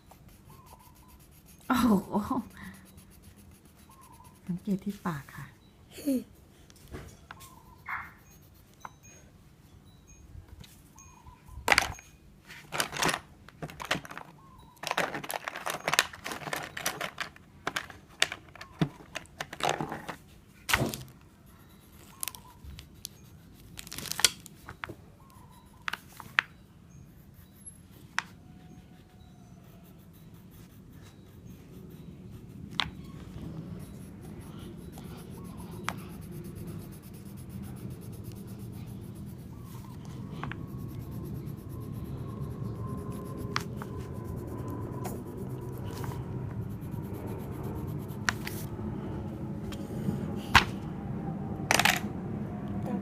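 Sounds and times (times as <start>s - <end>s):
paper and pencils rustling: 0.0s - 5.3s, 11.7s - 26.5s, 30.0s - 48.7s
low steady hum: 28.4s - 53.0s.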